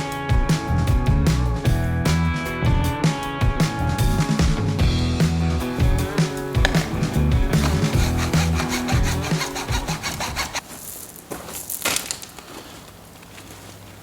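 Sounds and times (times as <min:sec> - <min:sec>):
background music: 0:00.0 - 0:10.6
hand saw cutting plastic pipe: 0:05.8 - 0:10.6.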